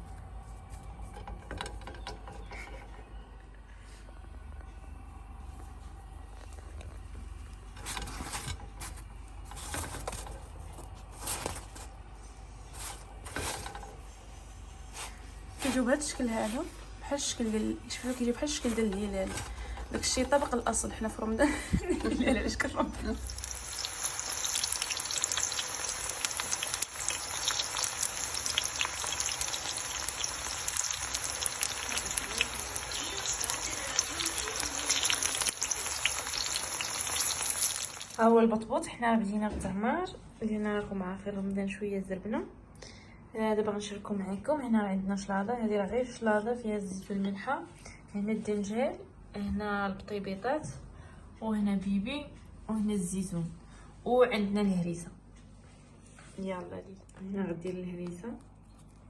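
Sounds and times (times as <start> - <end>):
steady low hum: 0.0 - 24.9
kitchen scrapes and rustles: 7.6 - 23.4
food sizzling in a pan: 22.8 - 38.2.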